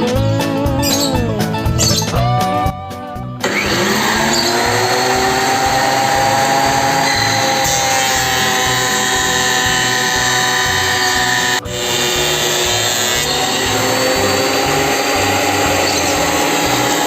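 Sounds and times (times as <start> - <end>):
guitar music: 0.0 - 17.0
thickness planer motor whining: 3.4 - 17.0.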